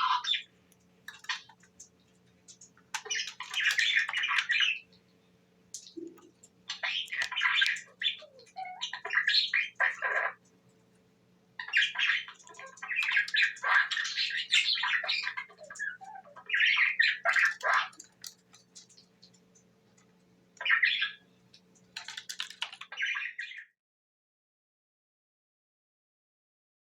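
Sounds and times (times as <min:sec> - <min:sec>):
budgerigar chirping and squawking: 0:00.0 - 0:00.5, 0:01.1 - 0:01.6, 0:02.6 - 0:05.0, 0:05.9 - 0:10.4, 0:11.6 - 0:18.9, 0:20.6 - 0:21.2, 0:22.0 - 0:23.7
faint steady hum: 0:00.0 - 0:23.6.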